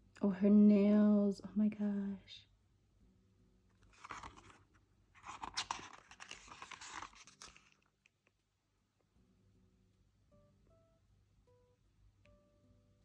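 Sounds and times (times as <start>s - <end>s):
paper pages rustling: 3.8s - 7.9s.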